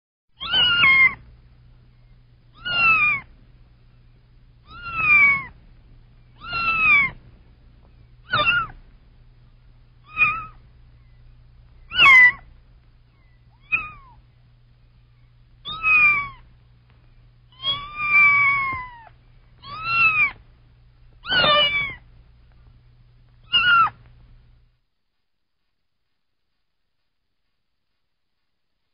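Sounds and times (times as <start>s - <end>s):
kitten meowing: 0.4s - 1.2s, 2.5s - 3.3s, 4.6s - 5.6s, 6.4s - 7.2s, 8.2s - 8.8s, 10.0s - 10.6s, 11.9s - 12.5s, 13.2s - 14.2s, 15.6s - 16.5s, 17.5s - 20.4s, 21.2s - 22.0s, 23.4s - 24.0s.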